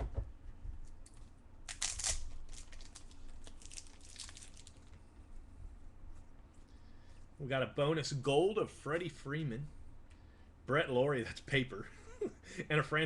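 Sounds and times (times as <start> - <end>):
wrapper crinkling: 1.0 - 5.0
wrapper tearing: 1.0 - 5.0.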